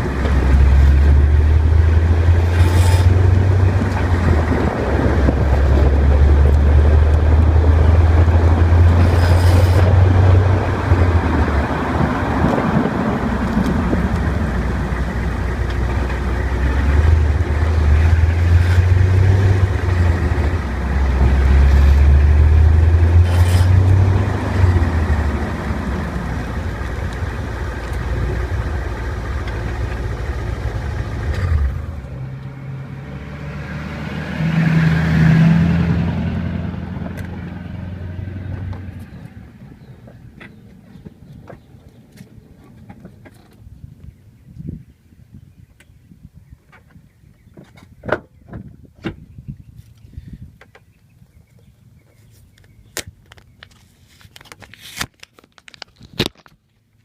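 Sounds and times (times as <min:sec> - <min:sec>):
car engine deep drone: 0:00.0 - 0:44.3.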